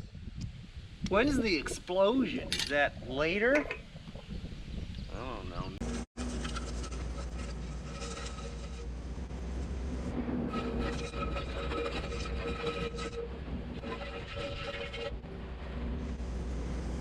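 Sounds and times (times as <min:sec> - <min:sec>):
high hydraulic whine: 0:05.8 - 0:17.0
low diesel rumble: 0:15.1 - 0:17.0.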